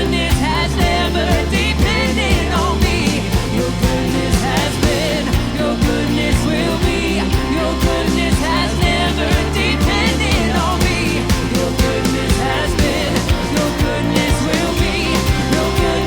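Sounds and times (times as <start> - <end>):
drum beat: 0.0 - 16.0
sustained bass: 0.0 - 16.0
wavering singing voice: 0.0 - 16.0.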